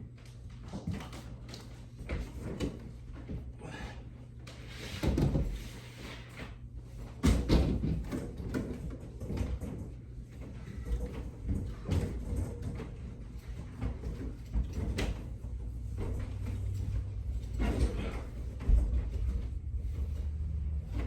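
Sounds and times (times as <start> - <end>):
steady low hum: 0.0 - 21.0
knocks clatter and scraping: 7.2 - 21.0.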